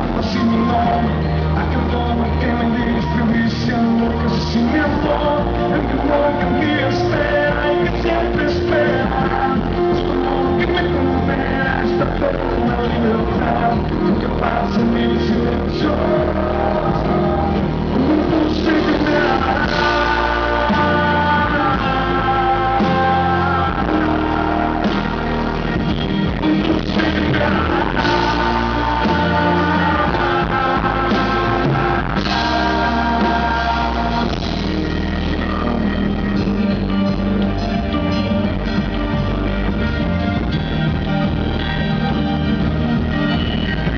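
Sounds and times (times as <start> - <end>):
live pop rock band: 0.0 - 43.9.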